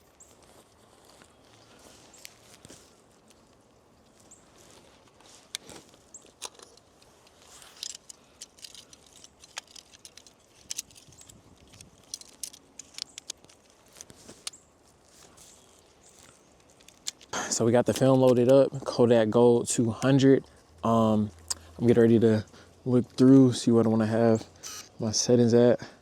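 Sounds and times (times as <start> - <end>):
light rustling: 0.0 - 19.0
small plastic and metal clicks: 5.5 - 14.6, 16.6 - 18.6.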